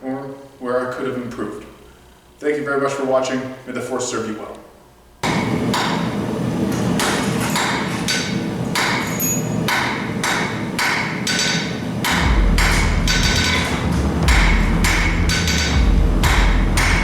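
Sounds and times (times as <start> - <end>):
hammer striking anvil: 6.7 - 17.0
strong low rumble: 12.1 - 17.0.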